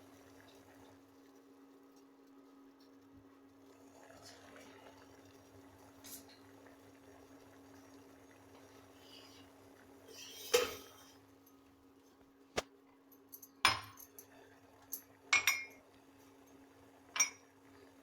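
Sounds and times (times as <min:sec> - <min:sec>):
kitchen utensils clinking: 0:10.1 - 0:11.2, 0:13.3 - 0:15.8, 0:17.2 - 0:17.5.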